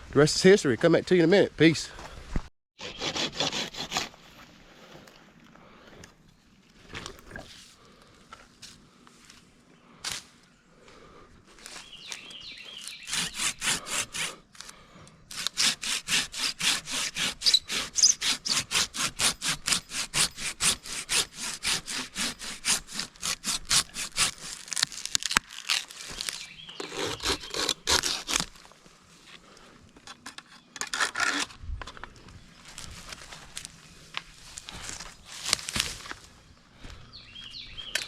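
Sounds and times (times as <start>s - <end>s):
hand saw cutting wood: 2.8s - 4.2s, 12.8s - 28.6s, 30.1s - 31.5s.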